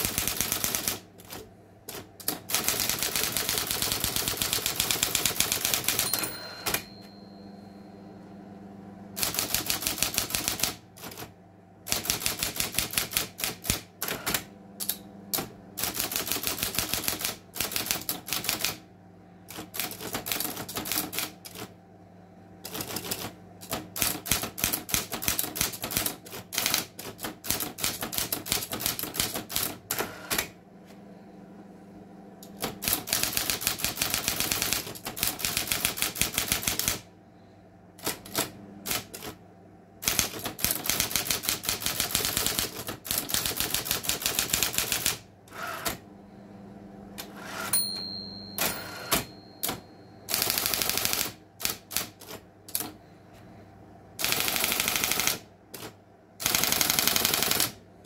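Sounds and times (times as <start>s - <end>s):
electric typewriter typing: 0.0s - 7.0s, 9.2s - 18.8s, 19.5s - 21.7s, 22.6s - 30.6s, 32.4s - 37.1s, 38.0s - 39.4s, 40.0s - 46.0s, 47.2s - 53.0s, 54.2s - 57.8s
typewriter motor humming: 0.0s - 7.0s, 9.2s - 11.3s, 11.9s - 18.8s, 19.5s - 21.7s, 22.6s - 30.5s, 32.5s - 37.0s, 38.0s - 39.4s, 40.0s - 46.0s, 48.6s - 53.0s, 54.2s - 57.8s.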